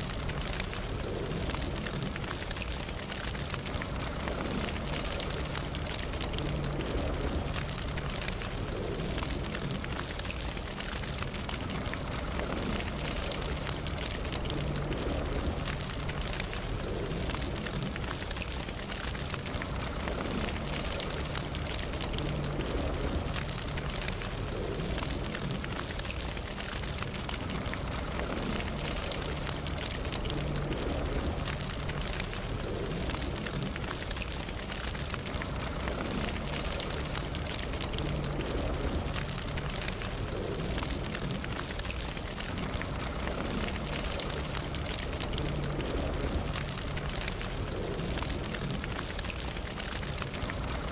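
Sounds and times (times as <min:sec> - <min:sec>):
campfire flames hissing and rumbling: 0:00.0 - 0:50.9
wood crackling and popping: 0:00.0 - 0:50.9.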